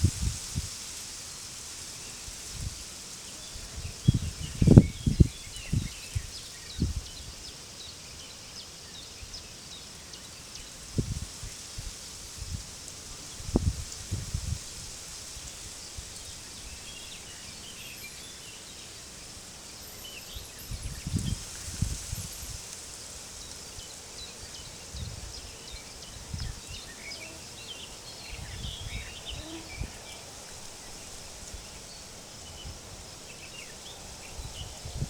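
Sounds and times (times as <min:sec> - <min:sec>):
wind buffeting microphone: 0:00.0 - 0:00.8, 0:03.6 - 0:07.4, 0:10.9 - 0:16.9, 0:20.4 - 0:22.6, 0:24.9 - 0:26.8, 0:28.2 - 0:35.0
open-field ambience hiss: 0:00.0 - 0:35.0.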